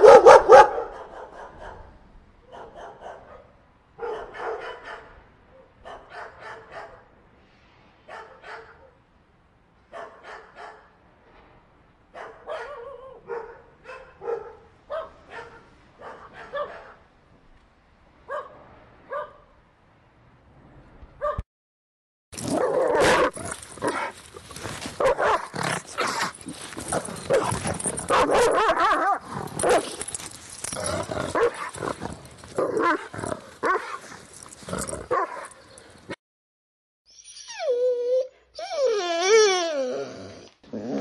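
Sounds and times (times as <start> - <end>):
angry dog barking loudly: 0.0 - 1.9, 2.5 - 5.2, 5.8 - 7.1, 12.2 - 17.0, 22.4 - 30.2, 30.8 - 34.2, 34.9 - 35.7
group of dogs barking: 0.0 - 1.9, 25.0 - 25.6, 27.0 - 30.1, 31.3 - 31.9.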